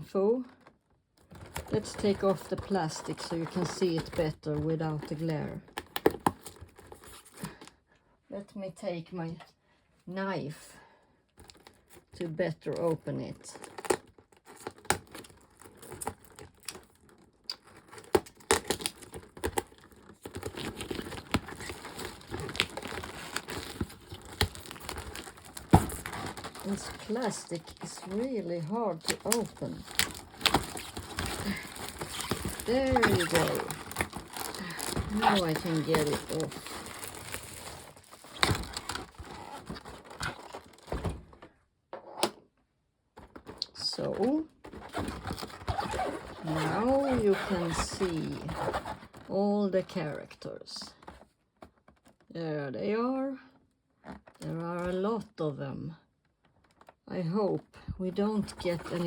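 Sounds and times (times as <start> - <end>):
plastic crinkling: 0.6 - 7.7, 12.8 - 41.6, 43.2 - 52.2, 56.4 - 57.0, 57.9 - 59.0.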